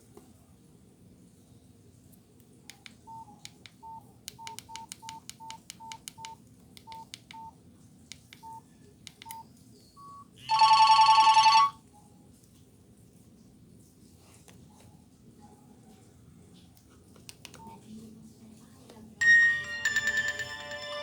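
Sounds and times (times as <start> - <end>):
phone keypad clicks and beeps: 2.7 - 7.5, 8.2 - 9.4, 10.0 - 11.7
buzzy pulsing phone tone: 10.0 - 11.8.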